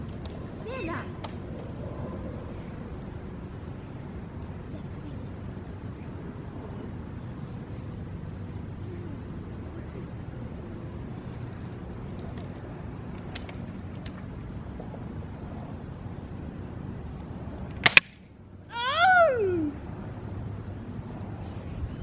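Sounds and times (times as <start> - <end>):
steady low rumble: 0.0 - 13.3.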